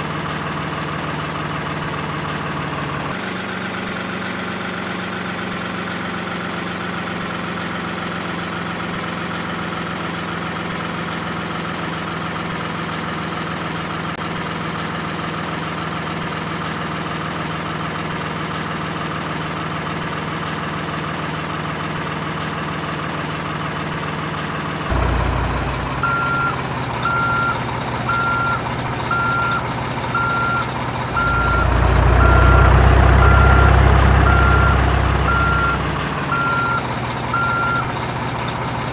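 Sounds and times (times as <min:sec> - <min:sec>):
heavy vehicle engine running: 0:00.0 - 0:38.9
reversing beeper: 0:24.9 - 0:29.6, 0:30.2 - 0:36.8.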